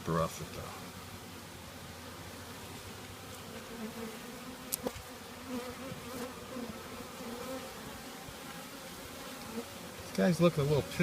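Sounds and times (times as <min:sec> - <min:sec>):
honeybees buzzing: 0:00.0 - 0:11.0.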